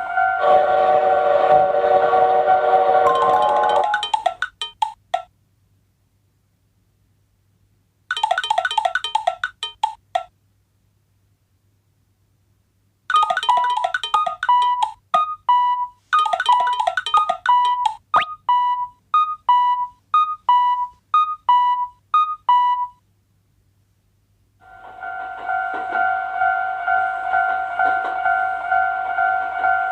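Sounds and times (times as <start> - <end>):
synthesizer jingle: 3.1 - 4.8, 8.1 - 10.0, 13.1 - 15.0, 16.2 - 18.4
electronic tones: 13.1 - 22.9.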